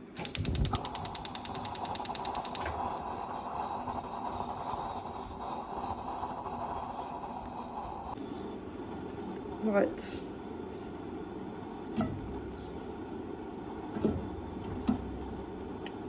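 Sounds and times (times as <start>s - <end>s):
ratcheting clicks: 0.0s - 2.9s
appliance motor hum: 0.0s - 8.2s.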